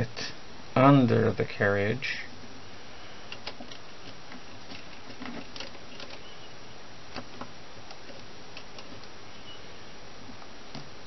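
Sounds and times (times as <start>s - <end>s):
steady hiss: 0.0s - 11.0s.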